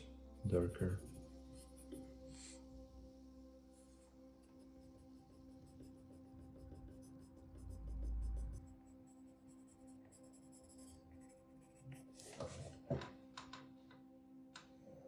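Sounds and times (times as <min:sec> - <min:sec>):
pencil scratching on paper: 0:05.6 - 0:08.7, 0:10.0 - 0:12.3.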